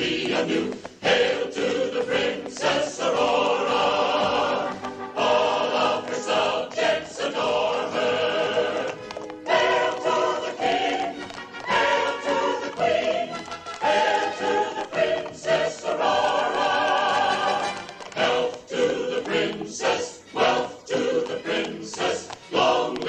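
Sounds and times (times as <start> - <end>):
choir singing: 0.0 - 23.0
orchestra playing: 4.3 - 14.6.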